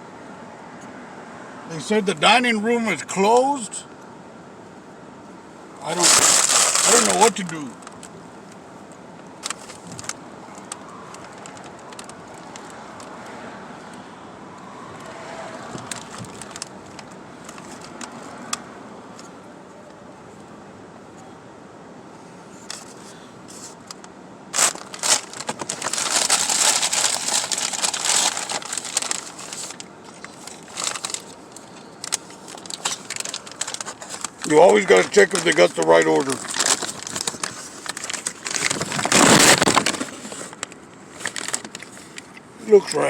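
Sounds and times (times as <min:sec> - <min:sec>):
food bag rustling and crinkling: 0:05.9 - 0:08.1, 0:15.8 - 0:18.0, 0:24.5 - 0:42.3.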